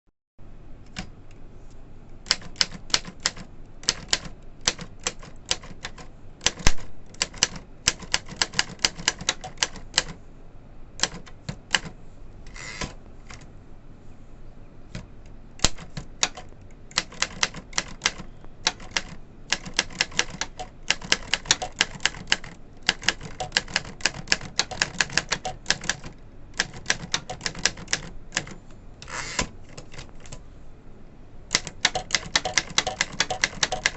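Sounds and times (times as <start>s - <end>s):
typewriter key strikes: 31.5s - 33.9s.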